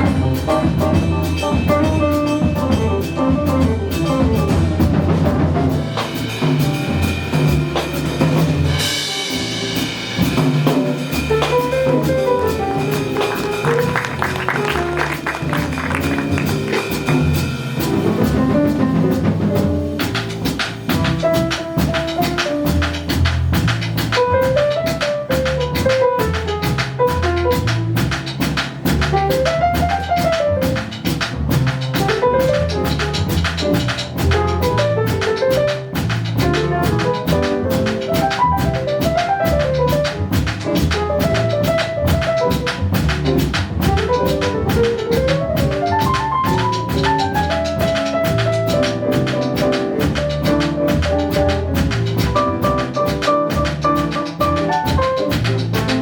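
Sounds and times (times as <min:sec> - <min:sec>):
jazz band playing: 0:00.0 - 0:56.0.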